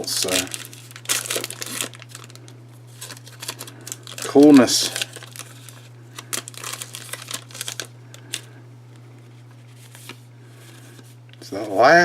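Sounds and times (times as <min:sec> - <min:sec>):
plastic wrapper crinkling: 0:00.0 - 0:11.0
faint steady hum: 0:00.0 - 0:12.0.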